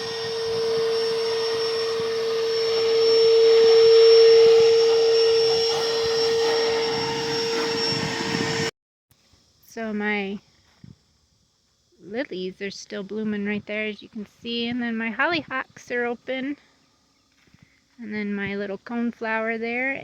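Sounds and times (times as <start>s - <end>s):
vacuum pump humming and hissing: 0.0s - 11.0s.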